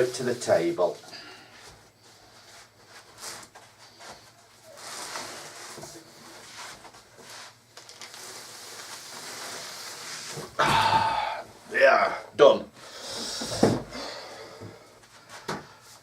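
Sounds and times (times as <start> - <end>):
cardboard rustling and scraping: 2.0 - 10.6.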